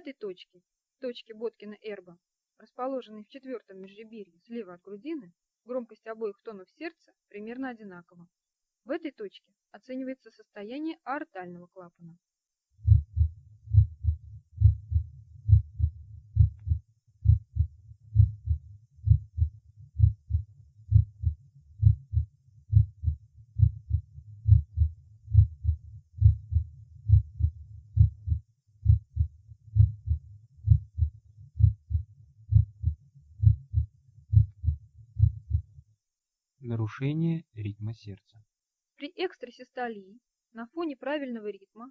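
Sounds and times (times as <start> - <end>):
heartbeat lub-dub: 12.8 - 35.8.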